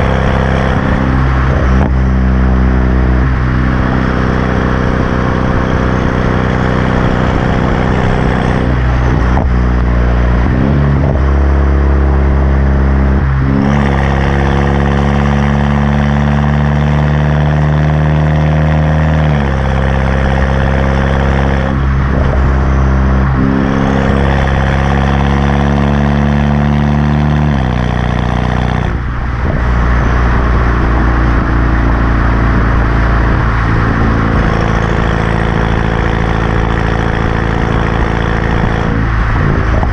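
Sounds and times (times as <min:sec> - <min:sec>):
loud car exhaust revving: 0:00.0 - 0:39.9.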